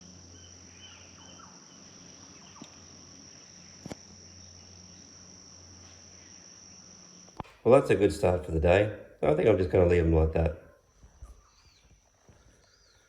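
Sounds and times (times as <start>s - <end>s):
faint bird chirps: 0.0s - 5.2s, 10.6s - 13.0s
insects droning: 0.0s - 13.0s.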